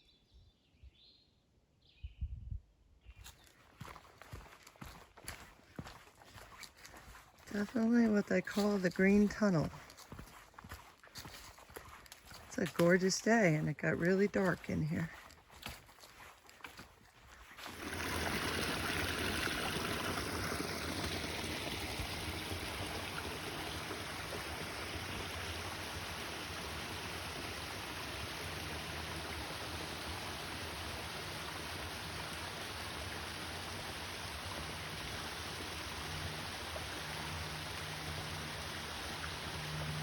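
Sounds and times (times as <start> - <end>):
stream water rushing: 3.8 - 40.0.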